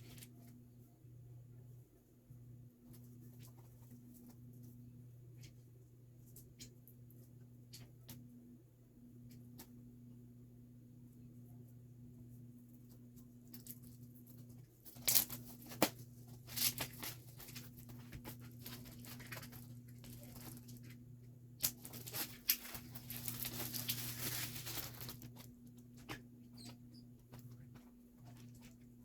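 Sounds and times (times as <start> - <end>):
low electrical hum: 0.0 - 29.0
plastic wrap crinkling and tearing: 14.9 - 21.0, 21.6 - 26.2.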